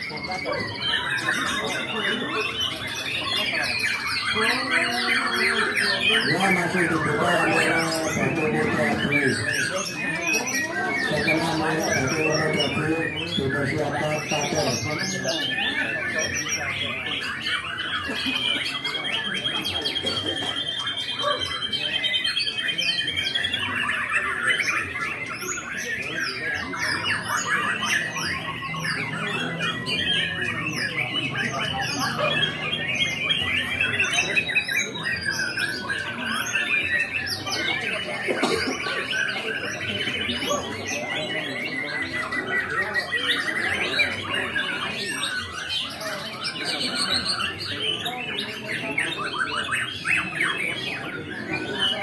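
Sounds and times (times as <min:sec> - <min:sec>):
songbird singing: 0:00.6 - 0:17.0.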